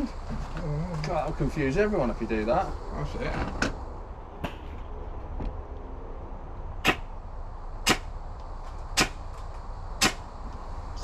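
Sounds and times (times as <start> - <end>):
airsoft gun shots: 6.8 - 7.1, 7.8 - 8.1, 9.0 - 9.2, 10.0 - 10.3.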